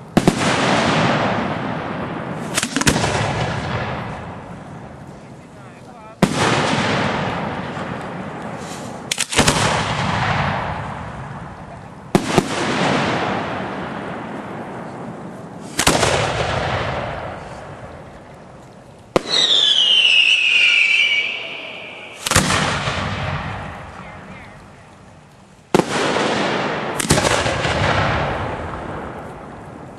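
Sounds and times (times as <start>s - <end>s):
firework shells bursting: 0.1s - 5.2s, 6.2s - 15.0s, 15.6s - 29.9s
firework whistle: 19.2s - 24.6s.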